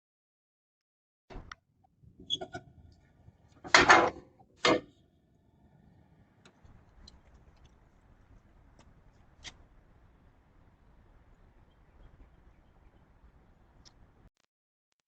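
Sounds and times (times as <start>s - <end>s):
clattering bangs: 2.1s - 5.0s.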